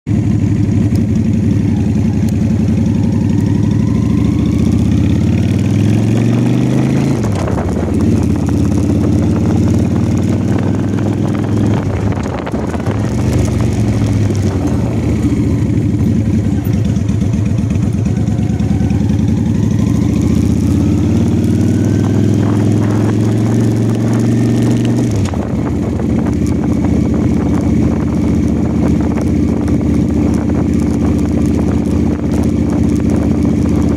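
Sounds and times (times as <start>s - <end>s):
engine whine: 0.1s - 33.9s
motorcycle engine revving: 0.1s - 33.9s.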